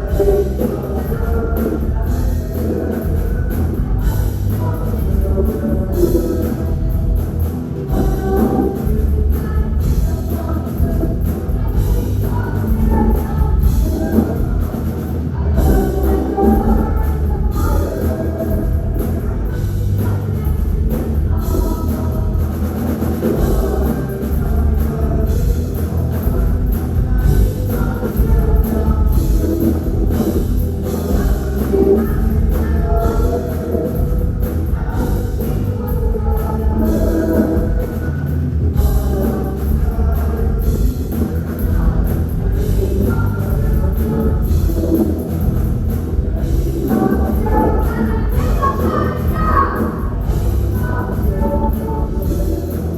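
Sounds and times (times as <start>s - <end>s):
drum kit beat: 0.0s - 52.9s.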